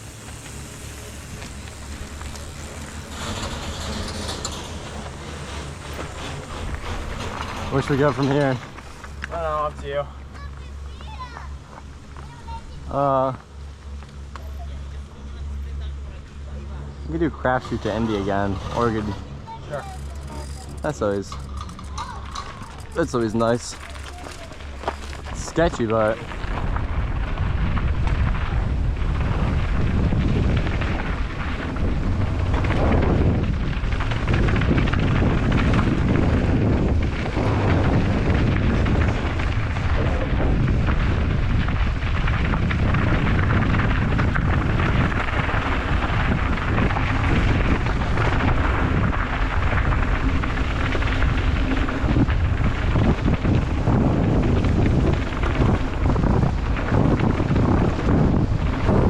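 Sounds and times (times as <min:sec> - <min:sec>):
mountain bike low rumble: 0:00.0 - 0:59.0
wind buffeting microphone: 0:16.8 - 0:59.0.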